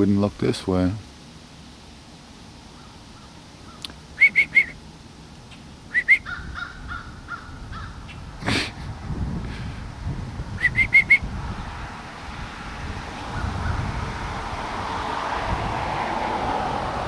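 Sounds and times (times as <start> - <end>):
crows cawing: 2.8 - 3.9, 6.2 - 8.2.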